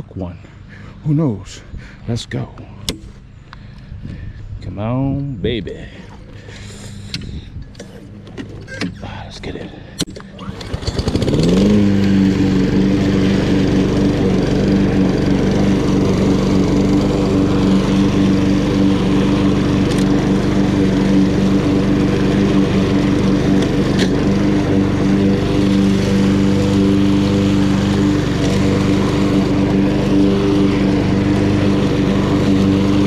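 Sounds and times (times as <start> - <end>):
lawn mower engine running: 5.8 - 9.2, 10.0 - 33.0.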